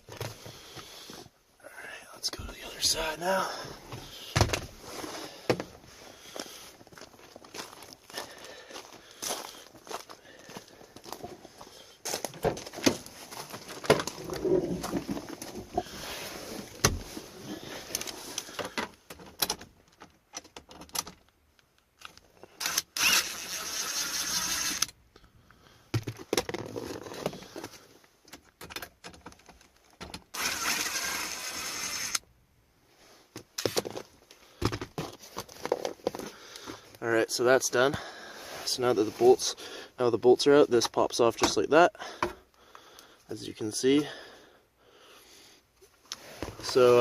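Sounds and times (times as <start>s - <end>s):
drill turning a socket: 22.6s - 25.0s, 30.3s - 32.2s.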